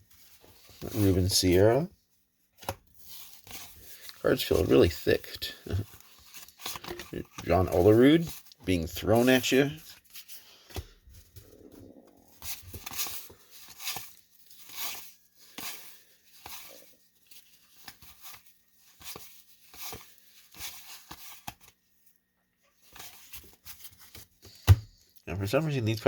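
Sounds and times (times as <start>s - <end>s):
cards sliding and flipping: 5.8s - 17.0s, 17.6s - 21.8s.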